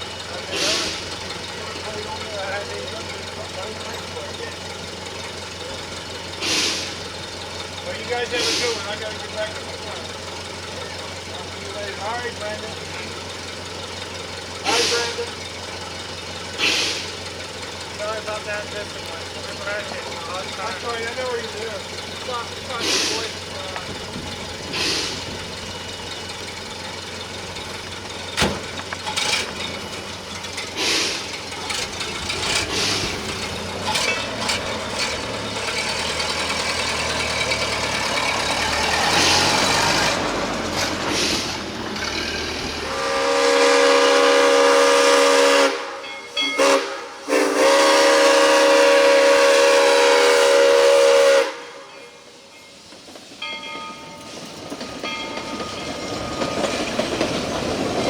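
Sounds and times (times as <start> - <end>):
wheels clicking and knocking: 0.0 - 42.9, 52.9 - 58.0
steam train running: 0.0 - 58.0
steam whistle: 42.8 - 52.2.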